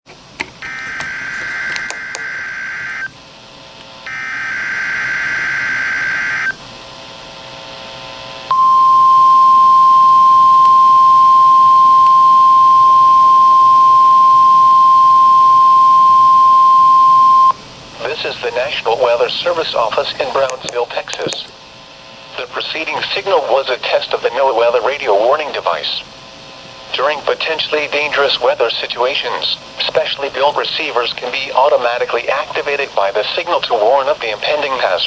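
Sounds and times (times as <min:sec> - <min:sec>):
buzzing digital header tones: 0:00.6 - 0:03.1, 0:04.0 - 0:06.6
steady warning alarm tone: 0:00.6 - 0:03.2, 0:04.0 - 0:06.6, 0:08.5 - 0:18.2.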